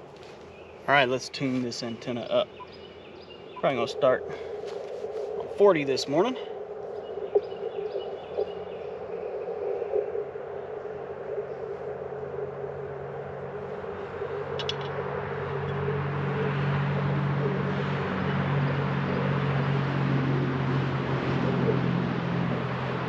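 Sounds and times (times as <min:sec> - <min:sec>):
vehicle passing by: 0:13.8 - 0:23.0
light ticks: 0:14.6 - 0:15.0.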